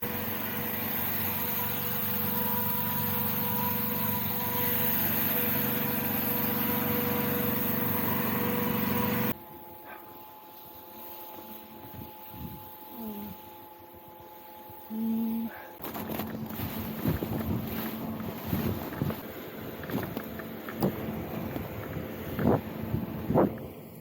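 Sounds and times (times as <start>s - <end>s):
motor humming: 11.4s - 24.0s.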